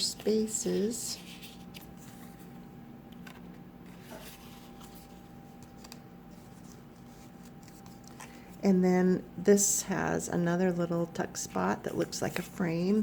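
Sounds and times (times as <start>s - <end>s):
paper and card rustling: 0.0s - 8.6s, 11.3s - 13.0s.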